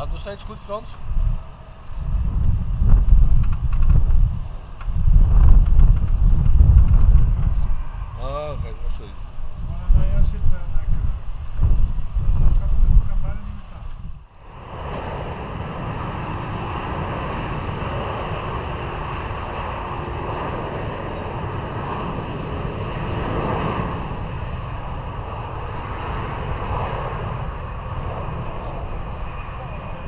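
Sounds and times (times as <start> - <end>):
jet airliner engines passing: 0.0 - 30.0.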